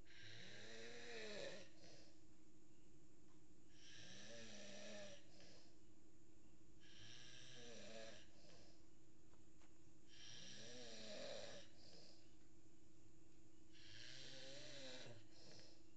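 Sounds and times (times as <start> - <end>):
steady low hum: 0.0 - 15.9
person snoring: 0.1 - 2.1, 3.7 - 5.7, 6.8 - 8.8, 10.1 - 12.3, 13.8 - 15.8.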